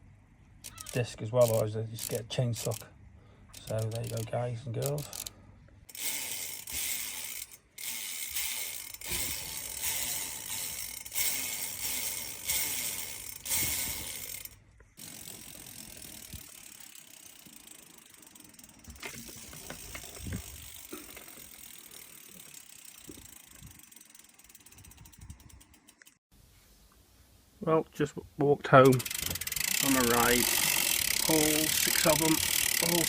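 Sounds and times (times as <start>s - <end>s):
bicycle hub ratcheting buzz: 0.6s - 2.9s, 3.5s - 26.2s, 28.8s - 33.0s
faint scattered clicks: 24.4s - 26.2s.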